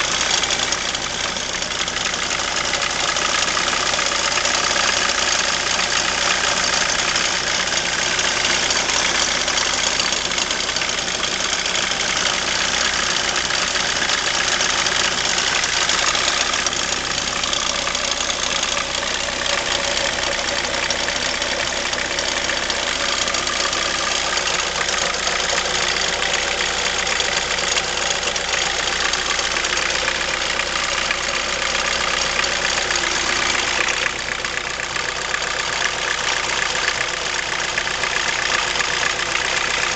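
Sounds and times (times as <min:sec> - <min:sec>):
diesel engine idling: 0:00.0 - 0:39.9
strange engine noise: 0:00.0 - 0:39.9.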